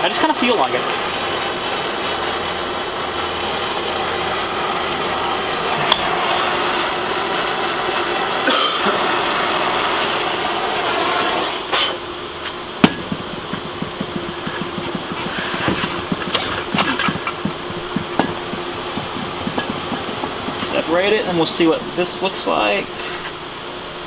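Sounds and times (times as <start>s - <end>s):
torch flame hissing: 0.0s - 24.0s
sharp knock on metal: 12.8s - 20.8s.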